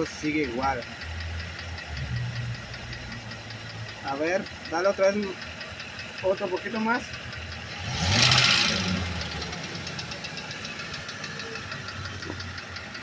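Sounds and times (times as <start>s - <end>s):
engine throttle blip and idle: 0.0s - 13.0s
fast even engine ticking: 0.0s - 13.0s.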